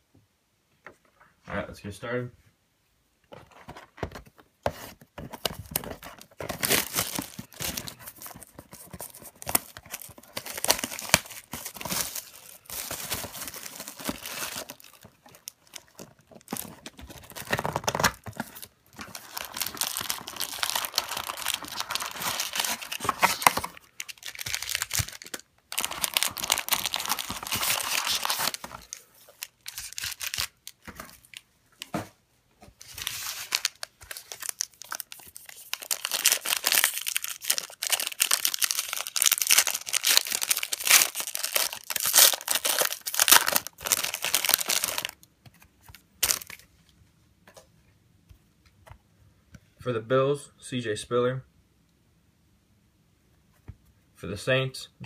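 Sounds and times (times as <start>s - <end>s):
plastic wrapping tearing and crinkling: 5.6s - 31.4s, 32.9s - 45.2s, 46.2s - 46.6s.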